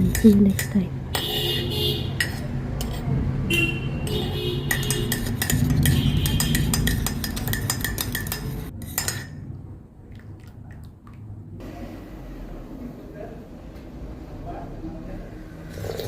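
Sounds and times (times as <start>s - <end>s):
cutlery clinking against crockery: 2.2s - 3.1s, 4.7s - 9.4s.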